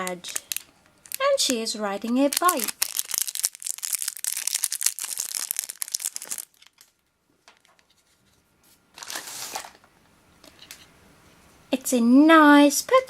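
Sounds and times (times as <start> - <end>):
crinkly packaging torn open: 0.0 - 7.0, 9.0 - 9.8.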